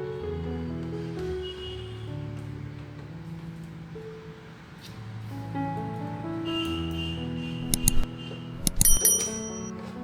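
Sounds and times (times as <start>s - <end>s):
plucked string background music: 4.8s - 10.0s.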